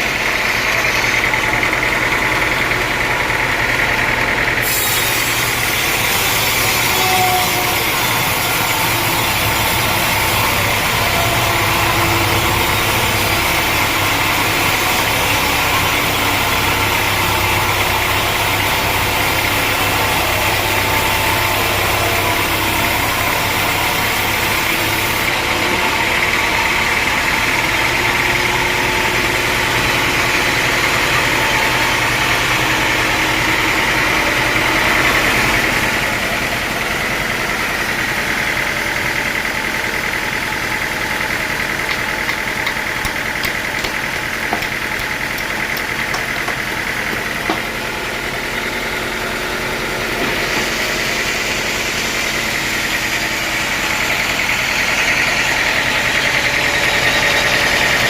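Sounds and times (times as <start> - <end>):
sawmill machinery drone: 0.0 - 58.0.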